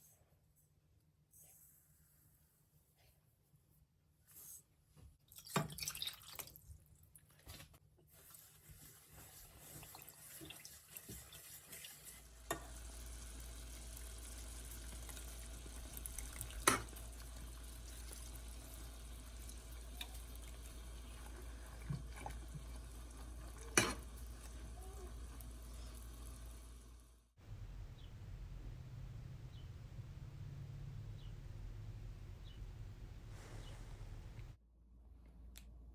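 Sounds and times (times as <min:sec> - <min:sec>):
stirring in a cooking pot: 0:08.1 - 0:26.8.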